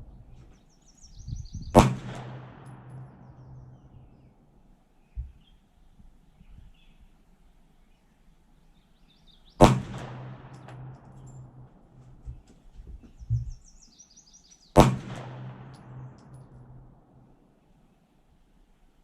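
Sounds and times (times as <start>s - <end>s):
birds chirping: 0.0s - 2.0s, 2.7s - 4.4s, 5.0s - 9.7s, 10.6s - 14.8s
pistol shots with echo: 1.7s - 4.0s, 9.6s - 12.0s, 14.8s - 17.2s
dull low thump: 9.6s - 13.7s.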